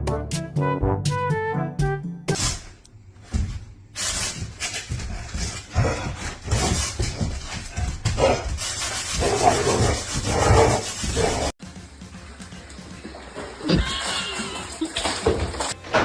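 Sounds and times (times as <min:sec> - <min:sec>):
rubbing and scuffing: 0:02.3 - 0:11.6.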